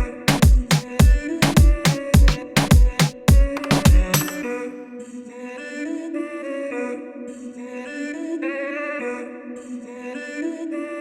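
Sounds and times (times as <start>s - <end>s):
drum beat: 0.0s - 4.4s.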